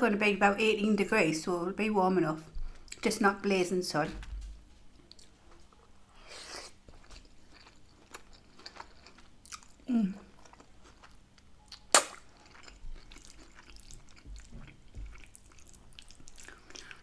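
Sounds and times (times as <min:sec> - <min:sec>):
chewing and mouth sounds: 0:05.0 - 0:17.0.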